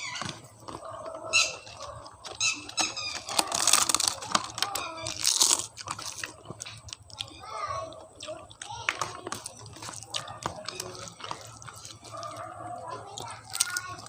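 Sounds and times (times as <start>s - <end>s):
crunching and chewing crisp food: 0.0s - 14.0s
short high squeaks: 2.4s - 3.6s.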